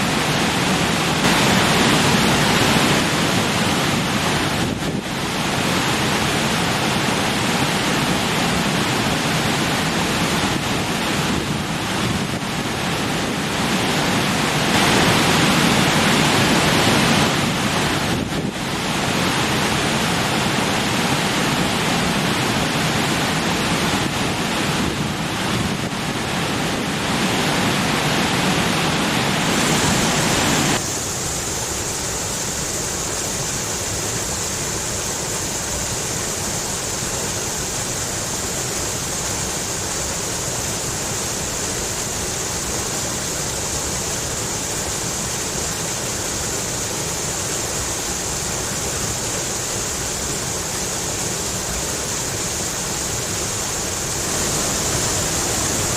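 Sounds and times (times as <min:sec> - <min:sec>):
stream water rushing over rocks: 0:00.0 - 0:55.9.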